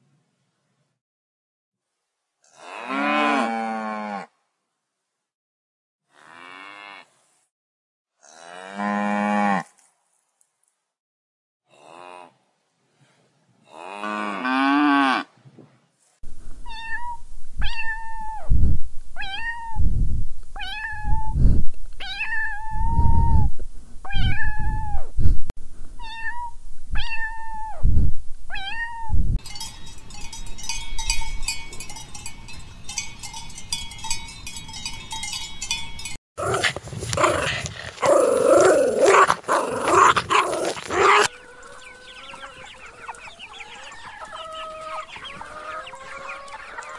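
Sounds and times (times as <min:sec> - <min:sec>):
cat meowing: 0:16.7 - 0:18.4, 0:19.2 - 0:19.8, 0:20.6 - 0:21.3, 0:24.1 - 0:25.0, 0:26.0 - 0:27.7, 0:28.5 - 0:29.2.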